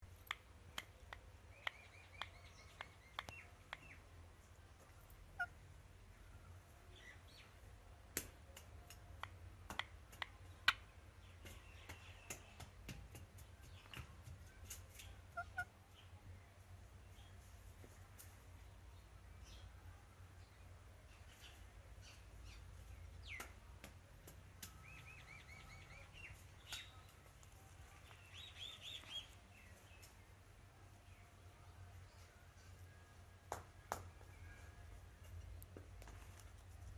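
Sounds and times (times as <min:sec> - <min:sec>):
faint parrot chirps: 0:05.0 - 0:05.6, 0:15.0 - 0:16.1
parrot chirping: 0:15.4 - 0:15.7.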